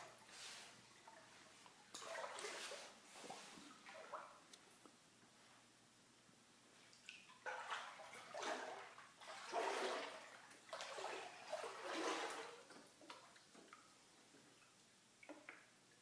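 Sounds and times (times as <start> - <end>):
water sloshing and rushing: 0.0 - 4.4, 7.2 - 13.4.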